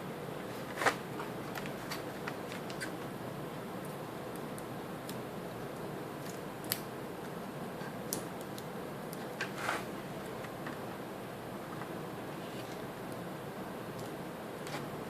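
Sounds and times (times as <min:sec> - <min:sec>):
short scrape: 0:09.6 - 0:09.9.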